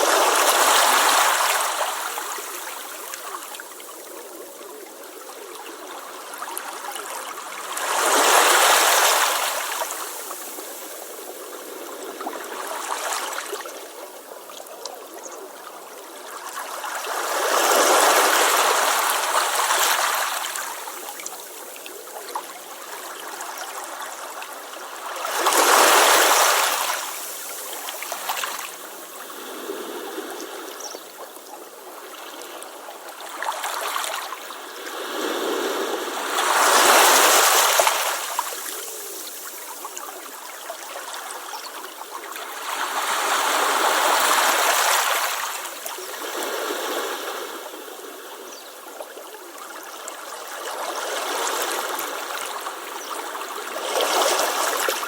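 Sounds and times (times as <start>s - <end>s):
waves crashing on a beach: 0.0s - 55.0s.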